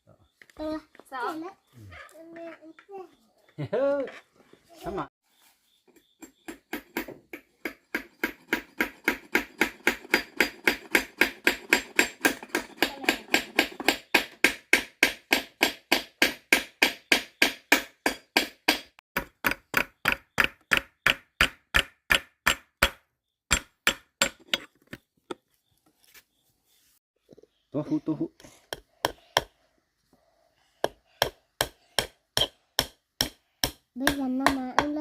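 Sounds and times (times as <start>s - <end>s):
hammer striking wood: 6.5s - 24.6s, 30.8s - 35.0s.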